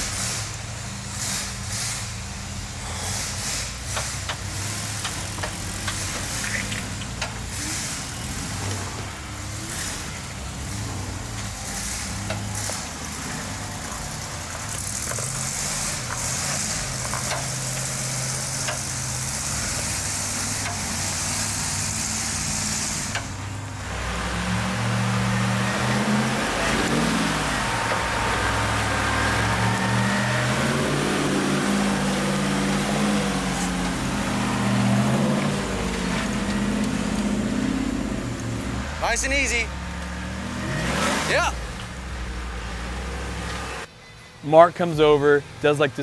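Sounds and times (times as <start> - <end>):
tyre or wind noise hiss: 0.0 - 39.6
engine running at low revs: 0.0 - 43.9
tyres crunching over rock and gravel: 4.0 - 21.8, 23.8 - 39.0.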